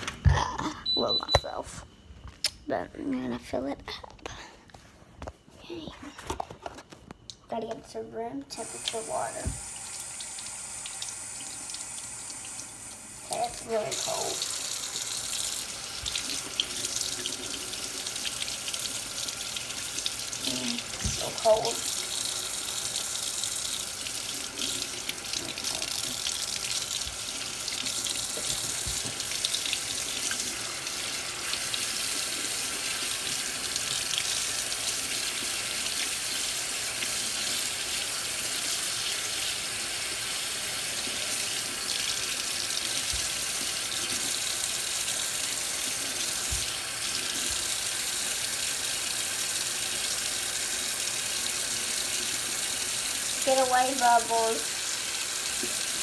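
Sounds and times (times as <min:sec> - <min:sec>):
tap running into a sink: 0:08.7 - 0:11.8, 0:20.9 - 0:23.1, 0:24.1 - 0:30.6, 0:41.9 - 0:45.1, 0:46.2 - 0:47.9.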